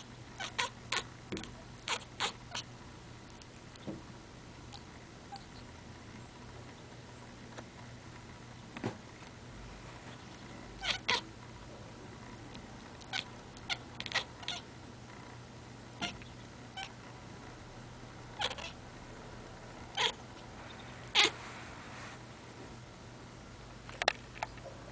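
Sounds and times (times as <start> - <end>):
cat chirping: 0.0 - 2.7, 4.7 - 5.7, 10.1 - 11.3, 13.0 - 14.7, 16.0 - 17.0, 18.4 - 18.8, 19.9 - 21.4.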